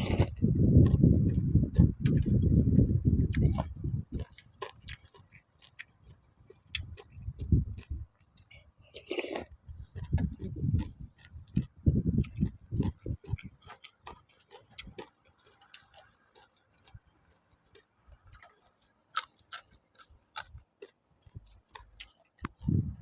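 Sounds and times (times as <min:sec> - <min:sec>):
slurping: 0:00.0 - 0:01.1, 0:08.9 - 0:16.2
chewing and lip smacking: 0:00.0 - 0:23.0.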